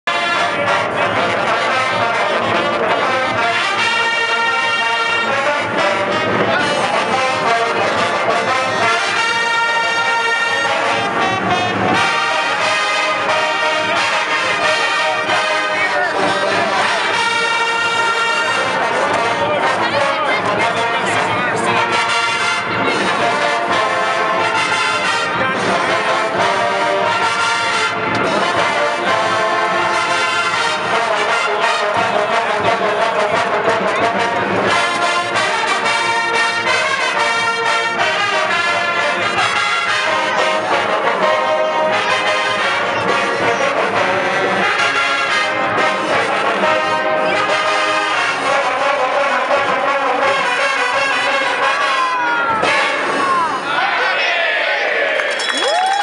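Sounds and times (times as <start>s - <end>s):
brass instruments playing tune: 0.0s - 55.9s.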